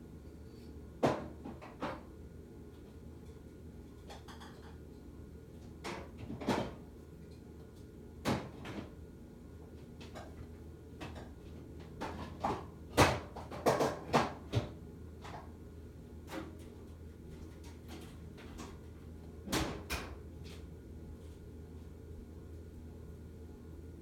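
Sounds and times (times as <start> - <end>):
objects knocking and clattering: 4.0 - 4.8, 10.0 - 15.5.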